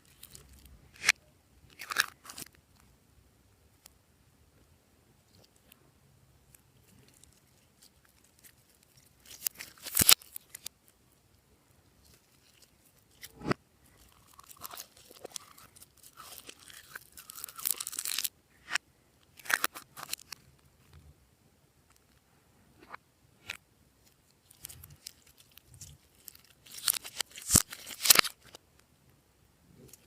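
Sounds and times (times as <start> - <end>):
slime crackling and popping: 6.8 - 10.7, 12.0 - 18.8, 24.4 - 28.6.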